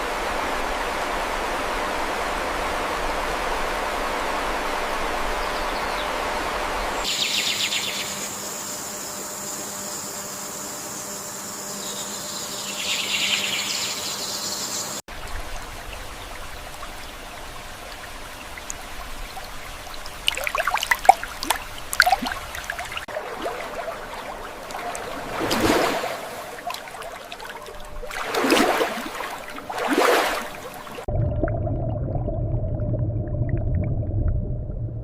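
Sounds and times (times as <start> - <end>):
water pouring or sloshing: 15.1 - 34.4
water splashing and trickling: 15.1 - 34.4
low hum: 31.0 - 35.0.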